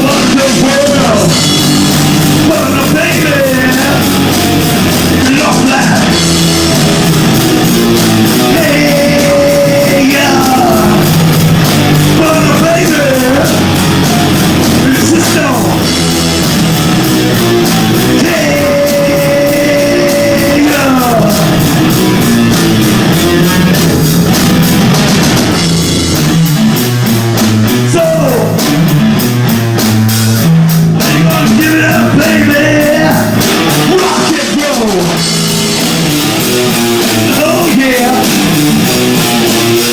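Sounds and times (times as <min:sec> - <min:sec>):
rock band playing live: 0:00.0 - 0:39.9
person singing: 0:02.3 - 0:06.5, 0:07.6 - 0:11.2, 0:12.0 - 0:16.1, 0:17.4 - 0:24.2, 0:31.0 - 0:35.6, 0:37.0 - 0:39.8.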